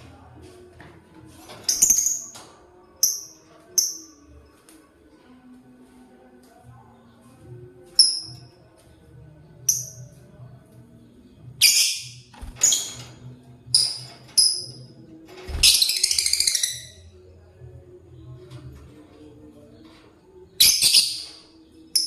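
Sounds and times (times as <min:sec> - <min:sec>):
birds chirping high-pitched: 0:11.6 - 0:13.2, 0:15.5 - 0:17.1, 0:20.6 - 0:22.0.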